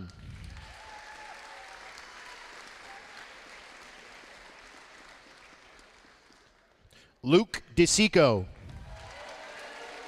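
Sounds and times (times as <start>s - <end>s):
audience applauding: 0.4s - 6.8s, 8.8s - 10.0s.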